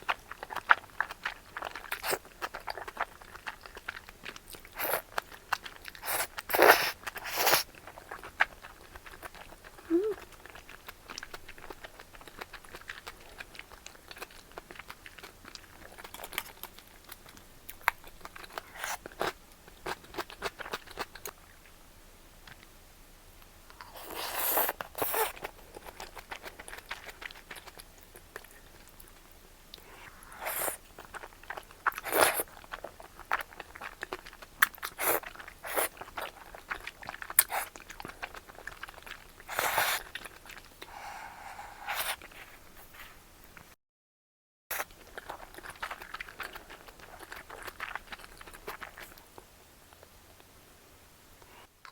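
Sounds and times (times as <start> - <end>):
person chewing and crunching: 0.0 - 21.5, 23.8 - 42.5, 44.7 - 50.5.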